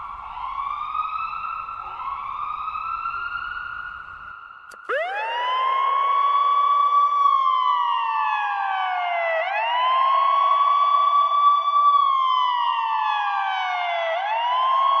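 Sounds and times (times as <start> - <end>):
ambulance siren wailing: 4.7 - 10.1.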